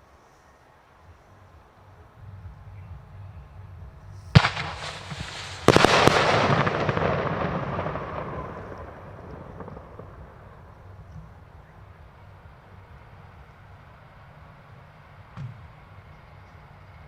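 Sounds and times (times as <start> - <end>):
fireworks bangs: 4.3 - 12.0
fireworks crackling: 4.3 - 14.3.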